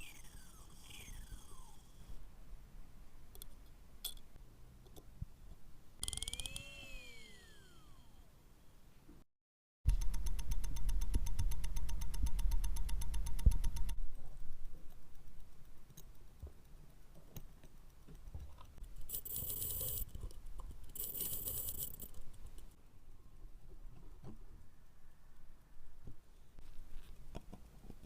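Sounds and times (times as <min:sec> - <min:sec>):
small motorised tool running: 0:00.0 - 0:02.0, 0:06.0 - 0:08.2
small metal tools clicking: 0:03.4 - 0:04.3, 0:06.0 - 0:07.9, 0:09.9 - 0:22.8.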